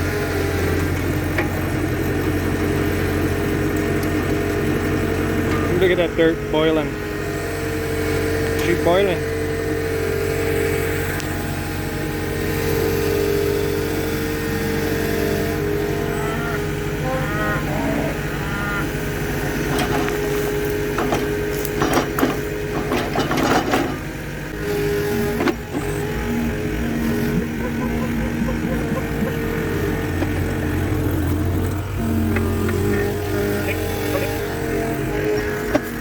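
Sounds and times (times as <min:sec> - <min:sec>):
auger engine running: 0:00.0 - 0:36.0
knocks and rattles: 0:20.9 - 0:24.1.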